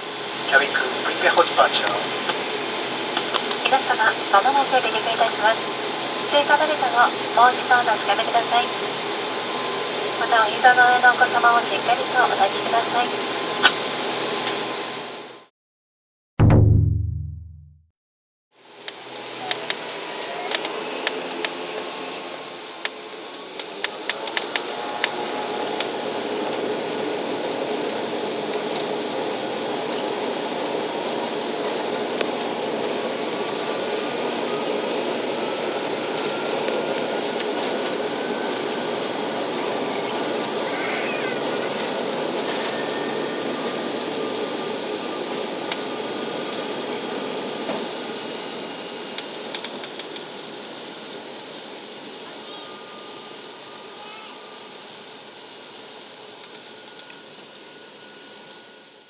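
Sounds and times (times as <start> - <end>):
turboprop engines droning: 0.1 - 13.4.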